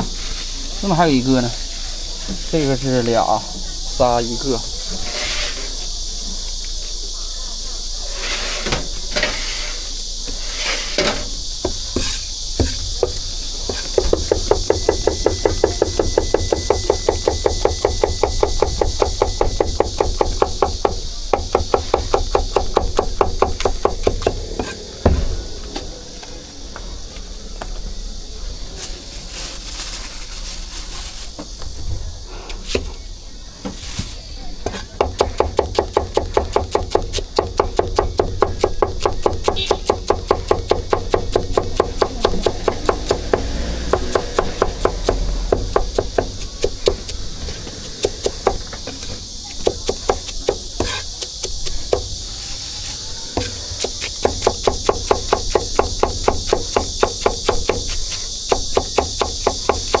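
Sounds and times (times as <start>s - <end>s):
cleaver chopping on wooden board: 11.6s - 25.4s, 34.6s - 48.8s, 49.6s - 52.1s, 53.4s - 60.0s.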